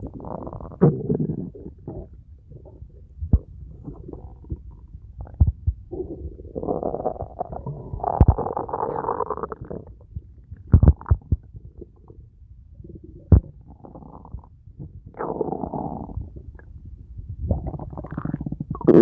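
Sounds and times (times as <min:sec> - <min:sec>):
bowel gurgling through stethoscope: 0:00.0 - 0:10.0, 0:17.4 - 0:19.0.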